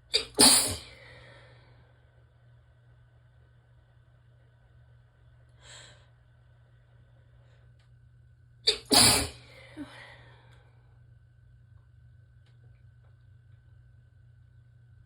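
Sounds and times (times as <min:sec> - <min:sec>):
person sneezing: 0:00.1 - 0:00.9, 0:08.7 - 0:09.5
faint breath: 0:00.7 - 0:02.0, 0:05.6 - 0:06.2, 0:09.4 - 0:10.9.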